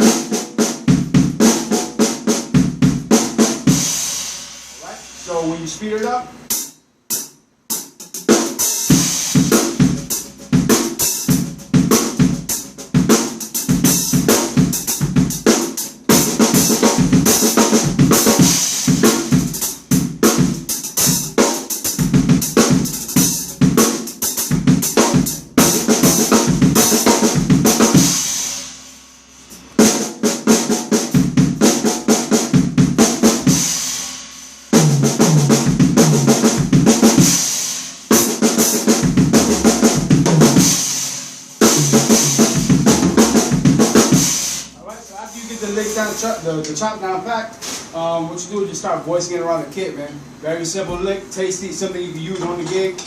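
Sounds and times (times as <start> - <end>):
snare drum fills: 6.0 - 28.7, 34.8 - 46.3
bass drum kicks: 24.5 - 28.3, 39.0 - 40.9, 41.6 - 44.4.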